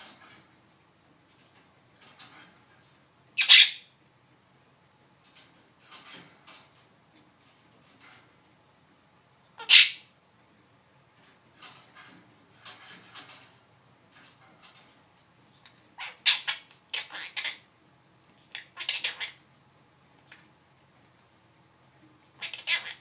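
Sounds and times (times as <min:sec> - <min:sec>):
bird squawking: 0:03.4 - 0:03.9, 0:09.6 - 0:10.1, 0:16.0 - 0:17.7, 0:18.5 - 0:19.4, 0:22.4 - 0:23.0
shrill bird calls: 0:03.4 - 0:03.9, 0:09.6 - 0:10.1.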